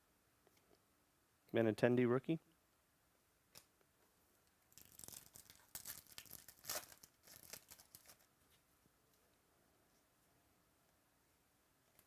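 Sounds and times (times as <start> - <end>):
wrapper crinkling and tearing: 4.7 - 8.3.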